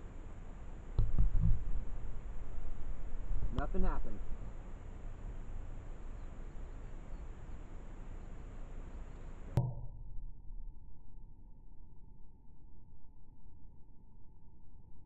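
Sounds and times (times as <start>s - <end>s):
low background noise: 0.0s - 9.6s
dull muffled hum: 0.0s - 15.0s.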